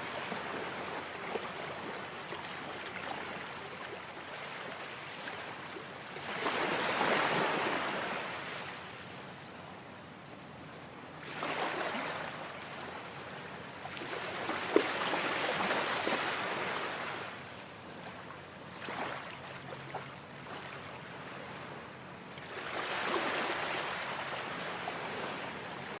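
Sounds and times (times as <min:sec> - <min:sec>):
sea waves breaking: 0:11.2 - 0:12.4, 0:13.9 - 0:21.6, 0:22.4 - 0:26.0.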